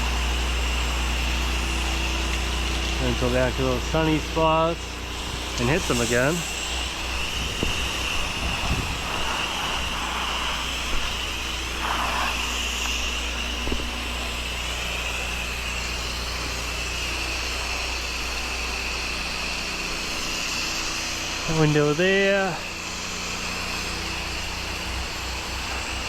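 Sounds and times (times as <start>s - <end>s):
pressure washer engines running: 0.0s - 26.0s
spray wand hissing: 5.2s - 16.3s.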